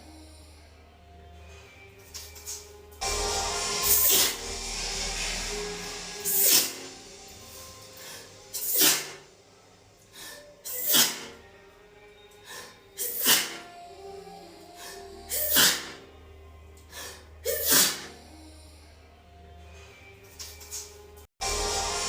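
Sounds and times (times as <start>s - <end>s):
woman sneezing: 8.6s - 9.2s, 10.7s - 11.3s, 13.0s - 13.6s, 15.3s - 16.0s, 17.4s - 18.1s.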